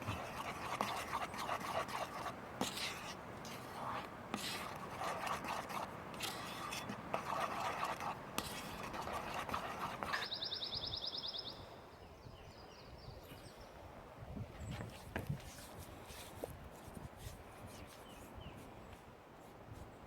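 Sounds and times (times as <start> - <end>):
utensil stirring paste in bowl: 0.0 - 10.4.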